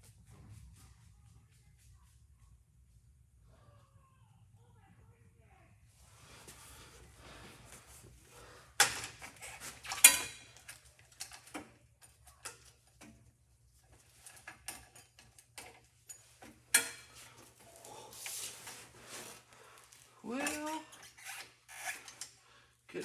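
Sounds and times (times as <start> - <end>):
metal bicycle parts clanking: 8.8 - 13.2, 13.9 - 17.4.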